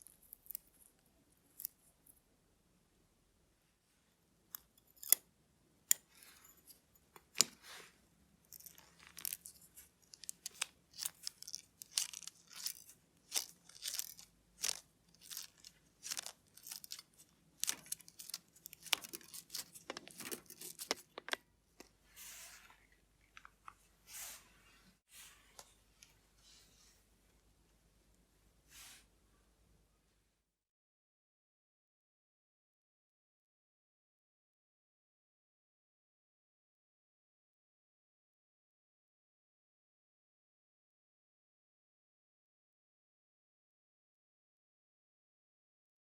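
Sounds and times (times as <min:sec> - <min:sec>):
small tools clicking: 0:04.5 - 0:05.2, 0:08.5 - 0:21.4.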